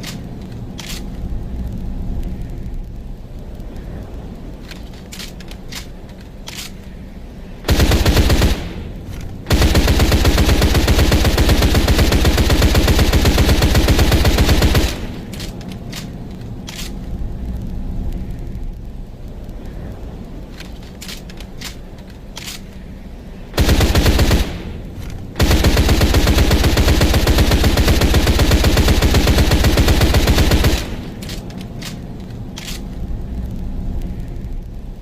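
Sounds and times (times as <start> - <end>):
submachine gun automatic fire: 7.7 - 8.9, 9.5 - 15.3, 23.6 - 24.7, 25.4 - 31.1.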